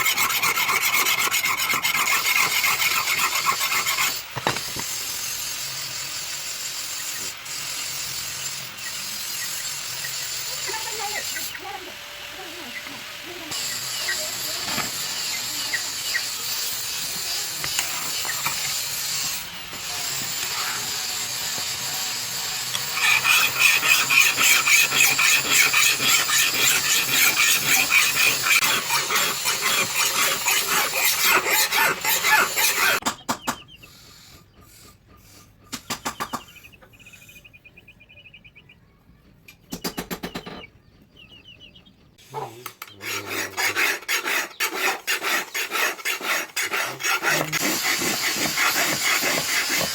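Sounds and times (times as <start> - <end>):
knife blade rasping scrape: 0.0 - 4.8, 22.7 - 33.0, 42.9 - 49.9.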